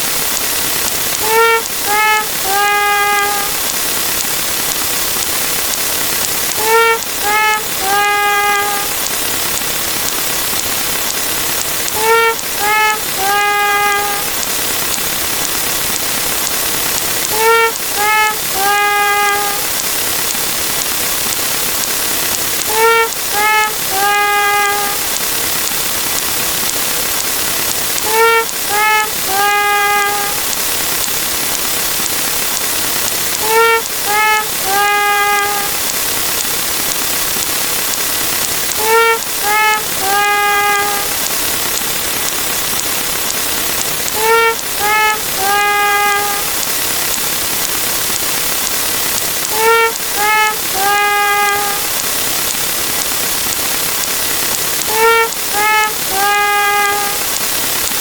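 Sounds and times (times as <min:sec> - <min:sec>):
steady hiss: 0:00.0 - 0:58.0
sad trombone sound effect: 0:01.2 - 0:03.6, 0:06.6 - 0:09.0, 0:11.9 - 0:14.4, 0:17.3 - 0:19.8, 0:22.6 - 0:25.1, 0:28.0 - 0:30.5, 0:33.4 - 0:35.9, 0:38.7 - 0:41.2, 0:44.1 - 0:46.6, 0:49.5 - 0:52.0, 0:54.8 - 0:57.4.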